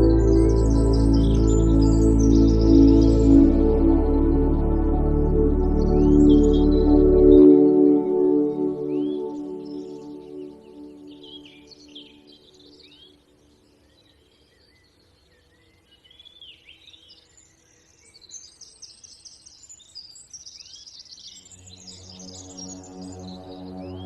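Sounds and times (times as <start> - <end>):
soft ambient music: 0.0 - 13.6, 21.4 - 24.0.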